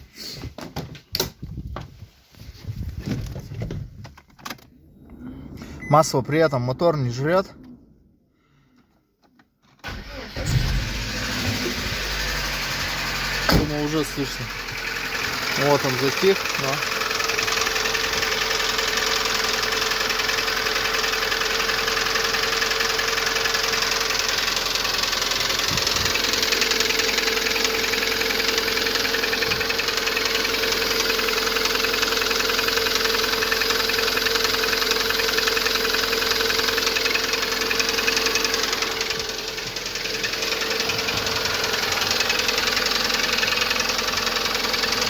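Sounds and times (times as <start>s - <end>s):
car engine idling: 9.8s - 45.0s
fast engine knocking: 14.4s - 45.0s.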